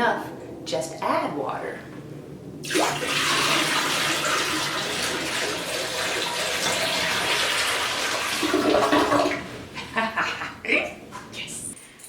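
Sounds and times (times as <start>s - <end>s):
water pouring into toilet bowl: 2.6s - 9.6s.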